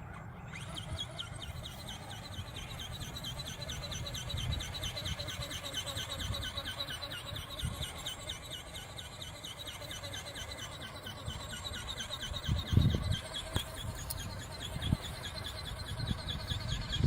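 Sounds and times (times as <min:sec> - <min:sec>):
high pulsing chirping: 0:00.3 - 0:17.0
wind buffeting microphone: 0:00.6 - 0:08.2, 0:11.2 - 0:17.0.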